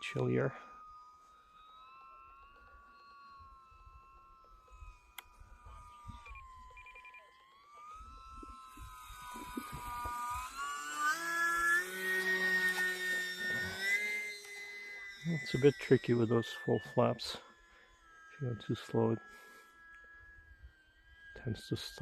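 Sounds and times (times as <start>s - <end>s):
electric motor and propeller whining: 0.0s - 22.0s
wind rumbling on microphone: 8.0s - 10.4s.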